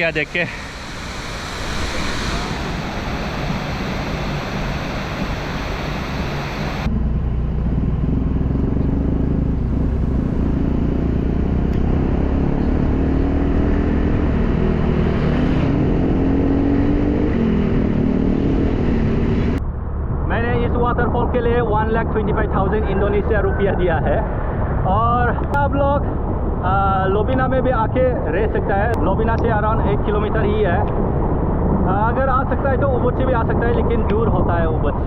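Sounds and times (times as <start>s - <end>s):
waterfall roaring: 0.0s - 6.9s
vehicle engine rumbling: 0.0s - 21.2s.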